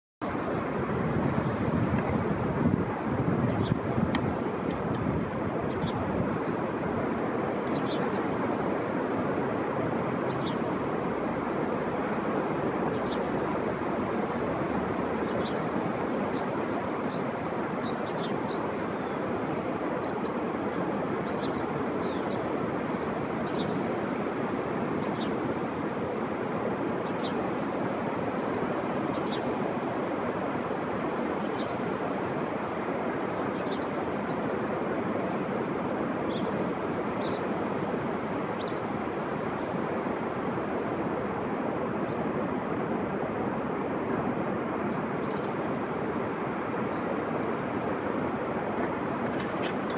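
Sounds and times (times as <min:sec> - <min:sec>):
ocean surf rushing: 0:00.2 - 0:07.6.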